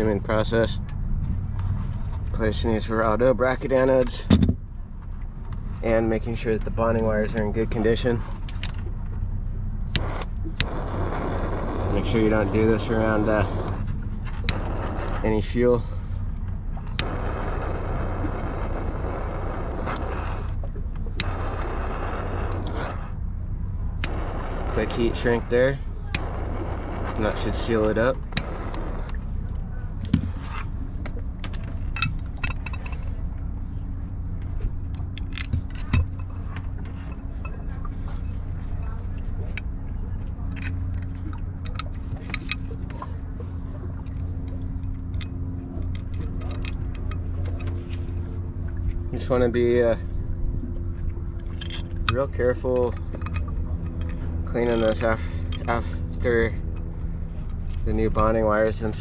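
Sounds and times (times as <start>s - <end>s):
steady low hum: 0.0s - 59.0s
gas torch hissing: 9.9s - 15.8s, 16.8s - 23.2s, 23.9s - 29.3s.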